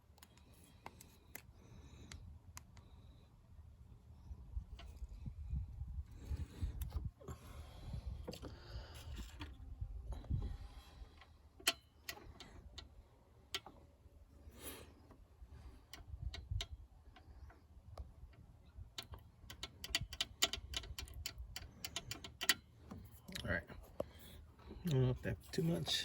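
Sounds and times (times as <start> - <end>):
hand tools clicking and tapping: 19.0 - 23.1.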